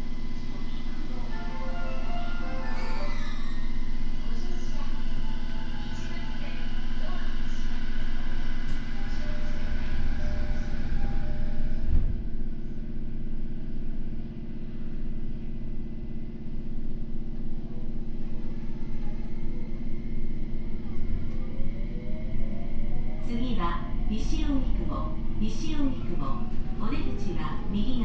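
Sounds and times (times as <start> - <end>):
train inverter rising tones: 0.0 - 8.1
train equipment humming: 0.0 - 22.1.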